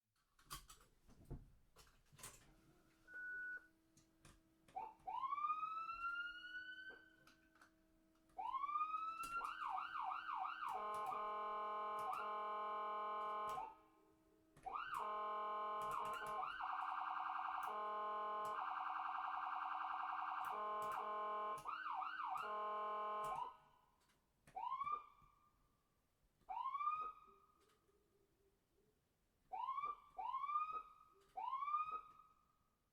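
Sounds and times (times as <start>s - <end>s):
electronic ambulance siren: 4.7s - 7.4s, 8.4s - 13.8s, 14.6s - 23.7s, 24.6s - 25.4s, 26.5s - 27.5s, 29.5s - 32.4s.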